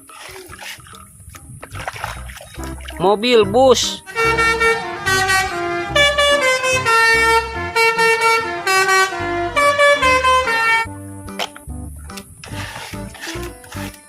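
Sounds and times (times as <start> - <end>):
multi-note bus horn tune: 3.8 - 11.2.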